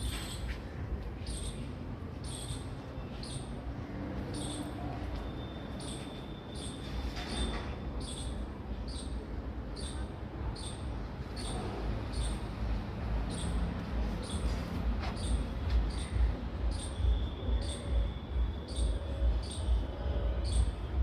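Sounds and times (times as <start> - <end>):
small bird chirping: 9.8 - 12.5.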